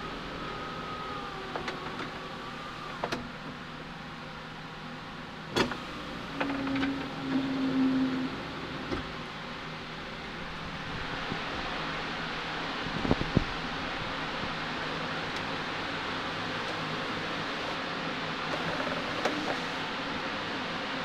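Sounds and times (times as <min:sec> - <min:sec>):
power window motor whining: 0:00.0 - 0:03.9, 0:05.5 - 0:09.7, 0:12.9 - 0:19.9
lower motor hum: 0:00.0 - 0:21.0.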